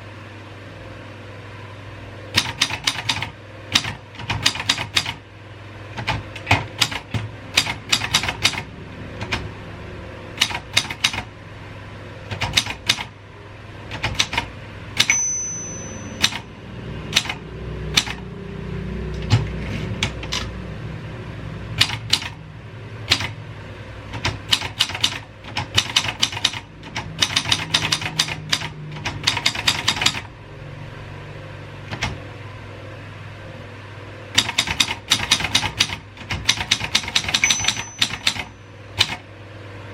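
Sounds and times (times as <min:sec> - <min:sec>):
typewriter key strikes: 0:02.4 - 0:05.2, 0:06.0 - 0:09.4, 0:10.4 - 0:11.3, 0:12.3 - 0:13.1, 0:13.9 - 0:15.2, 0:16.2 - 0:16.4, 0:23.1 - 0:23.4, 0:24.2 - 0:30.2, 0:34.4 - 0:39.2
typewriter bell ring: 0:15.0 - 0:16.5, 0:37.1 - 0:38.7.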